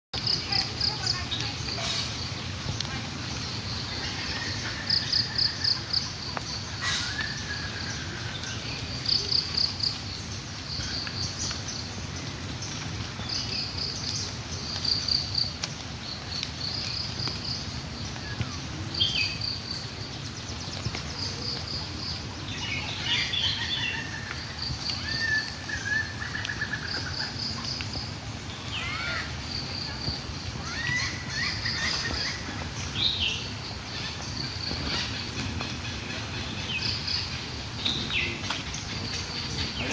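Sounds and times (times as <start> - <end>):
outdoor background hiss: 0.2 - 39.9
birds chirping and whistling: 3.4 - 8.9, 18.0 - 39.9.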